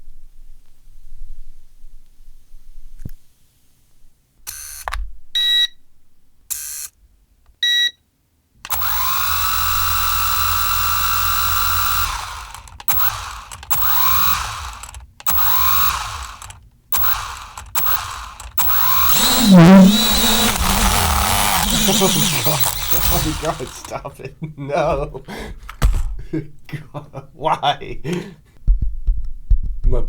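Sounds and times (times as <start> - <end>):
small electric motor whining: 8.7 - 24.0
short clicks and beeps: 12.0 - 20.9.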